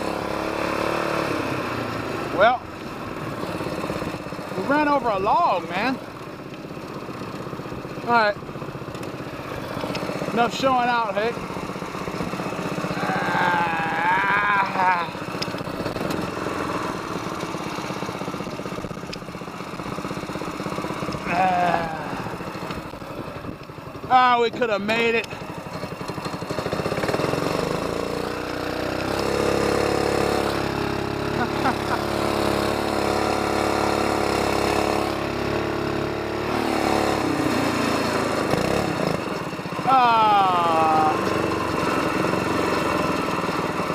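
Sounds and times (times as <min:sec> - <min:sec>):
boat motor engine running: 0:01.5 - 0:43.9
person calling out: 0:12.9 - 0:15.2, 0:21.2 - 0:22.5, 0:31.4 - 0:32.0, 0:39.8 - 0:41.3.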